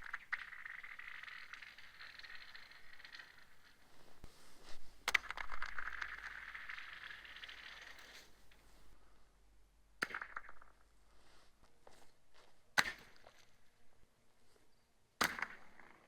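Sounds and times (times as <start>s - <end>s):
ice scraping crunch: 0.0s - 9.0s.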